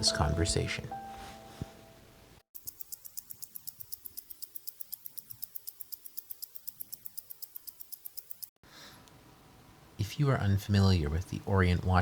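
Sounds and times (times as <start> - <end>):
wristwatch ticking: 2.6 - 8.5.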